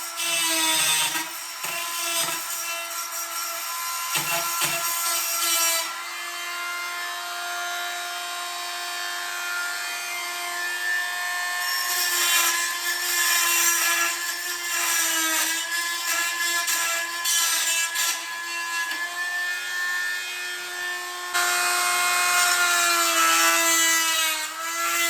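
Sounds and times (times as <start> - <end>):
blade cutting into wall: 0.0 - 6.0, 11.7 - 19.1
multi-tool humming: 0.0 - 9.3.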